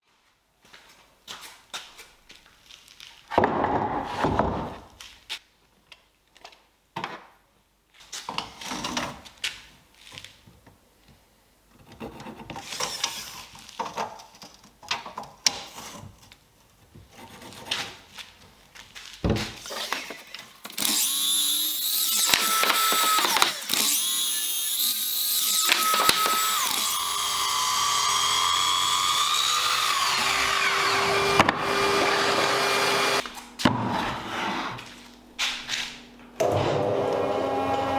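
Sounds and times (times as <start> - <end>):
power tool whine: 20.7 - 33.2, 36.4 - 37.9.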